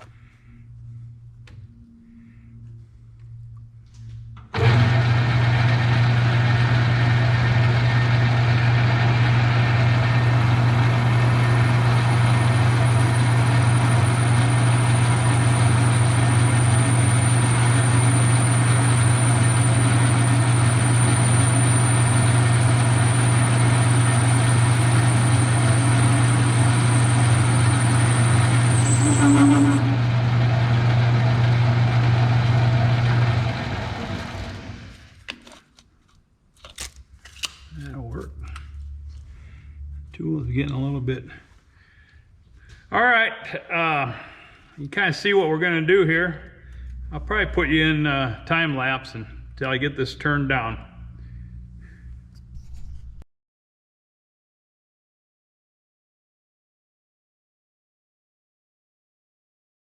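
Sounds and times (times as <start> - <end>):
motor hum: 0.0 - 35.2
high whine from cutting tool: 4.6 - 34.9
metal lathe cutting: 4.6 - 34.9.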